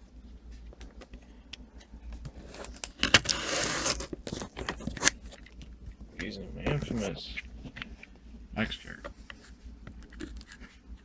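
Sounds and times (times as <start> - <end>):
packaging clicks and rustles: 2.2 - 5.8
package tearing: 2.4 - 5.4.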